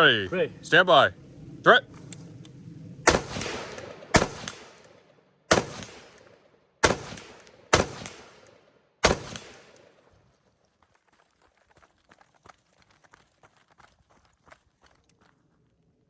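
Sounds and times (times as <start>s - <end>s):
rifle shots with echo: 3.0s - 10.1s.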